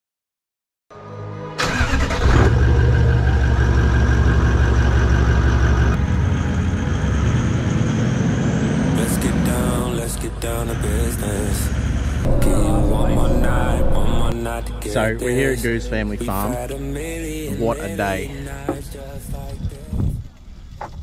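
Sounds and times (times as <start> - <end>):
vehicle engine running: 2.5 - 14.4.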